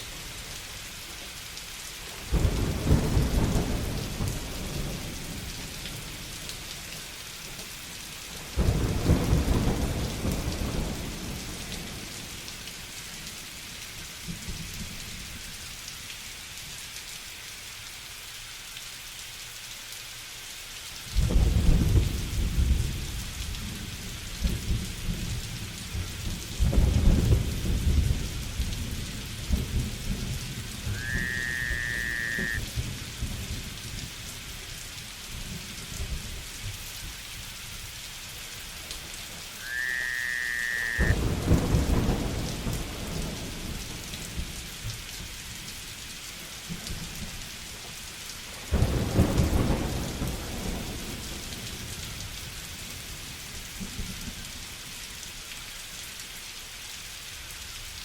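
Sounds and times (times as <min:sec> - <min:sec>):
steady rain: 0:00.0 - 0:58.0
thunder rolling: 0:29.5 - 0:33.5, 0:40.8 - 0:43.4
short high whistle: 0:30.9 - 0:32.6.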